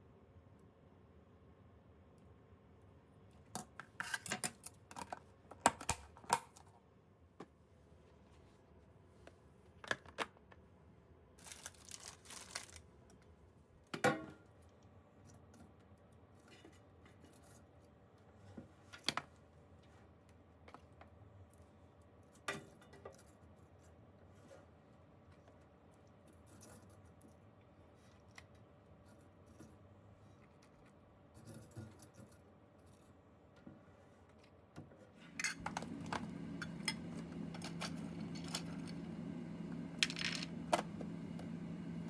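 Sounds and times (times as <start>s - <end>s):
objects clicking and knocking: 40.0s - 40.9s.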